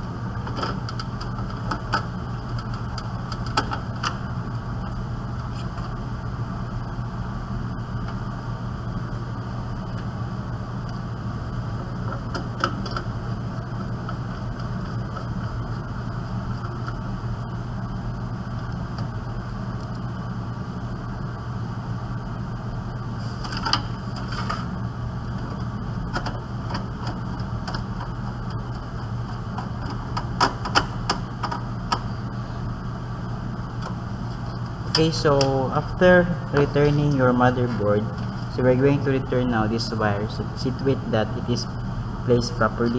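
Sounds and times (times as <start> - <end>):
steady low hum: 0.0 - 42.9
clicks and knocks of computer parts: 0.4 - 4.2, 25.4 - 32.1.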